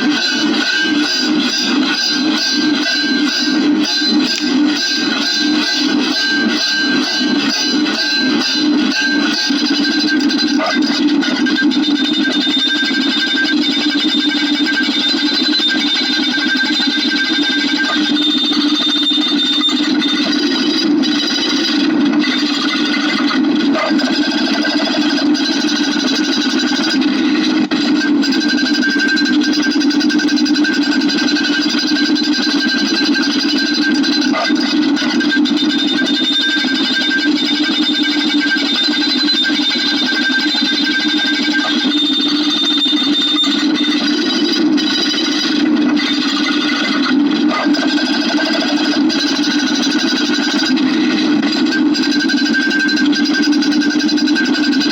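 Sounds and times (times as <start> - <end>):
dense clicking buzzing rasp: 0.0 - 54.9
thin high tone: 32.7 - 49.7.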